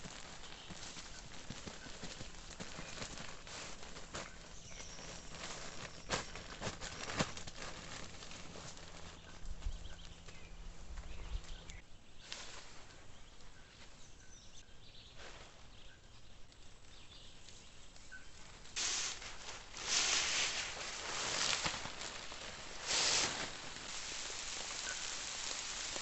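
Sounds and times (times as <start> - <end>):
loud bursts of hiss: 18.8 - 26.0.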